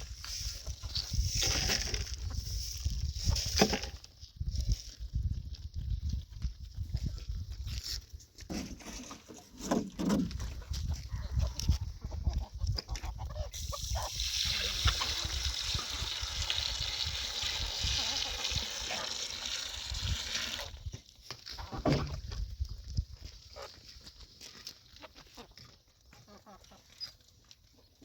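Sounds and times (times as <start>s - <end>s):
water pouring: 13.6s - 20.9s.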